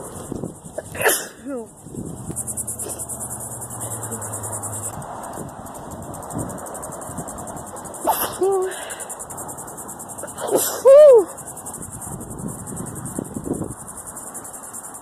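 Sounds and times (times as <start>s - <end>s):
crickets chirping: 0.0s - 15.0s
person sneezing: 0.8s - 1.6s, 8.0s - 9.0s, 10.3s - 11.1s.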